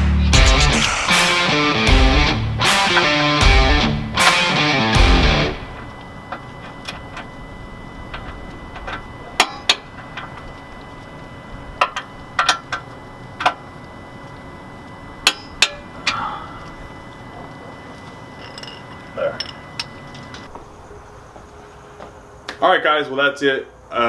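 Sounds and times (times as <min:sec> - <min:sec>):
hand tools clinking on metal: 0:18.4 - 0:20.5.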